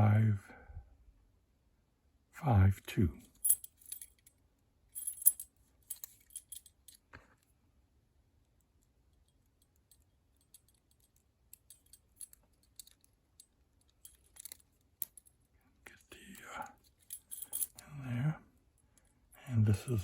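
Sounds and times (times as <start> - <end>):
padlock and lock picks jingling: 3.2 - 7.1, 8.6 - 17.8.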